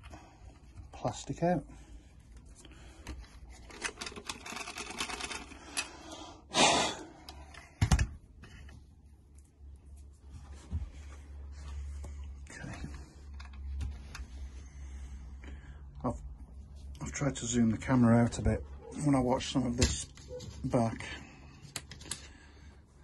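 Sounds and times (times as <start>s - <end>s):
plastic clicking and scratching: 3.0s - 5.9s.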